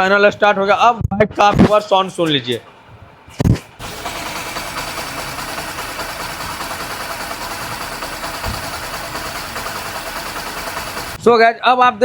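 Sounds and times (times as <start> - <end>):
motorcycle engine idling: 3.7 - 11.2.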